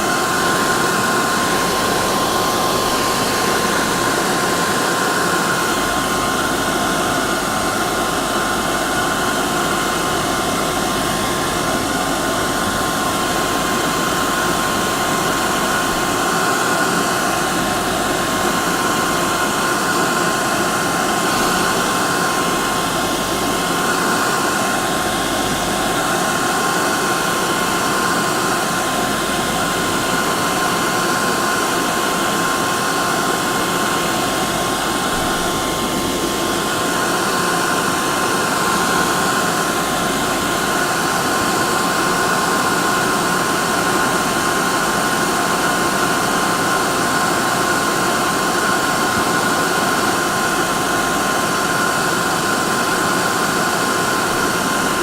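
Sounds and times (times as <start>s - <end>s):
hair dryer running: 0.0s - 55.0s.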